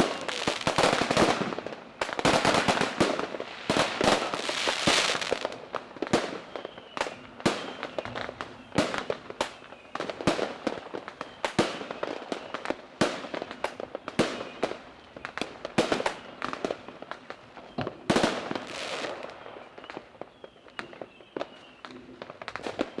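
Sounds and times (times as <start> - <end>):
fireworks bangs: 0.0 - 23.0
fireworks crackling: 0.0 - 23.0.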